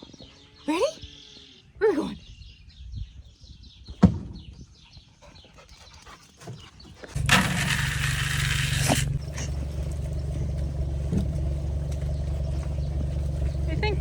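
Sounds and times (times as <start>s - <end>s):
vehicle engine starting and running: 7.1s - 14.0s.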